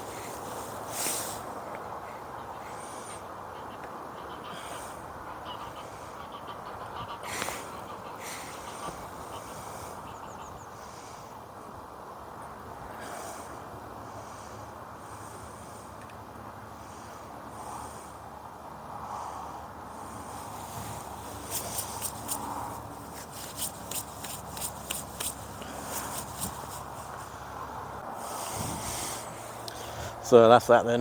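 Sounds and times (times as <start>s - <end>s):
outdoor background hiss: 0.0s - 31.0s
soft rushing noises: 19.0s - 31.0s.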